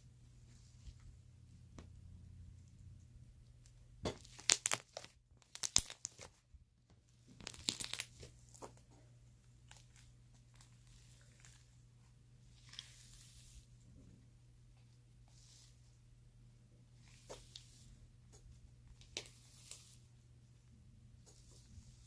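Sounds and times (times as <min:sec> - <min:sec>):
slime crackling and popping: 0:04.0 - 0:06.4, 0:07.3 - 0:08.3.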